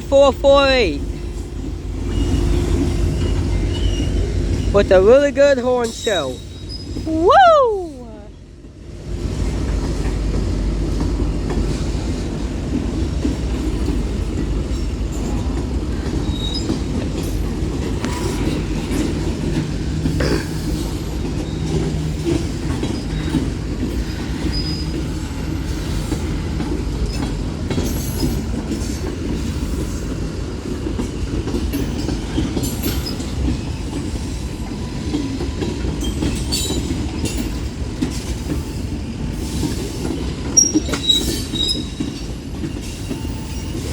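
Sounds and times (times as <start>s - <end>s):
steel wheels rumbling on rail: 0.0s - 43.9s
faint wheel squeals: 40.6s - 43.9s.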